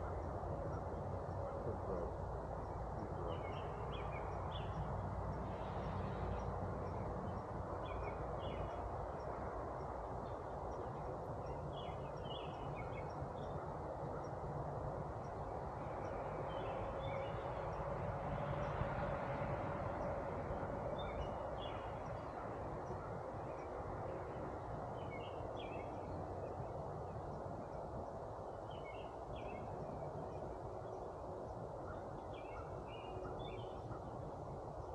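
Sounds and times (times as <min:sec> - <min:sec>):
birds chirping: 0:00.0 - 0:05.0.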